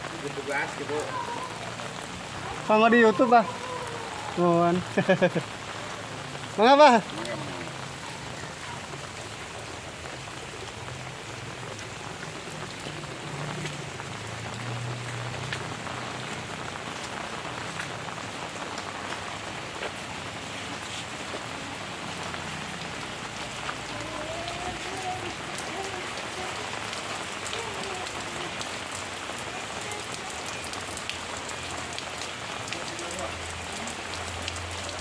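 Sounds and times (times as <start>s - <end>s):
heavy rain falling: 0.0s - 35.0s.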